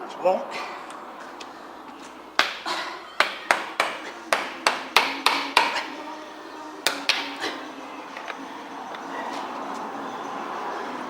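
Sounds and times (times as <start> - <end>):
hammer striking steel: 2.4 - 6.0, 6.8 - 7.5.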